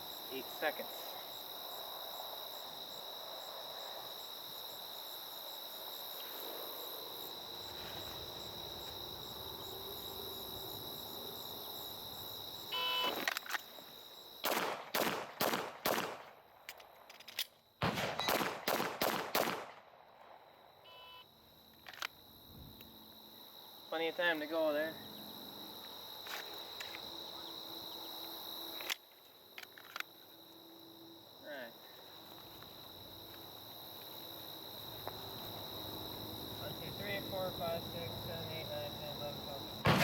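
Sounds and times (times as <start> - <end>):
crickets chirping: 0.0 - 40.0
handgun shots: 14.4 - 16.3, 17.8 - 19.8
magazine reload: 16.7 - 19.6, 21.8 - 22.2.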